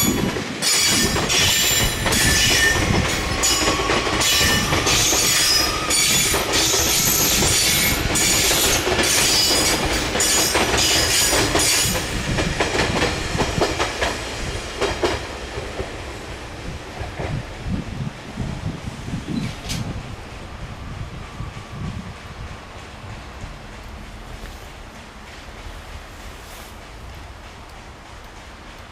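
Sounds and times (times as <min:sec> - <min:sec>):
train wheels squealing: 0:00.0 - 0:12.3
wheels clicking over rail joints: 0:00.0 - 0:14.2
train rumble: 0:00.0 - 0:28.9.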